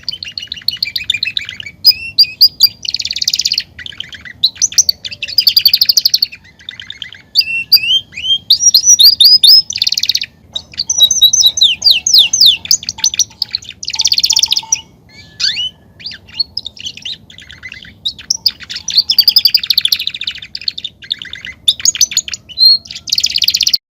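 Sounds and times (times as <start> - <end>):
canary singing trills: 0.0 - 23.8.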